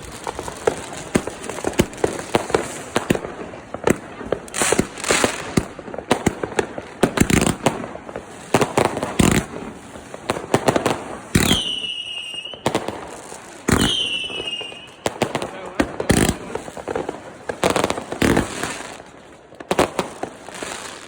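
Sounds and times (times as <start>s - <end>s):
fireworks bangs and crackles: 0.0s - 21.0s
high falling whistle: 11.4s - 12.6s.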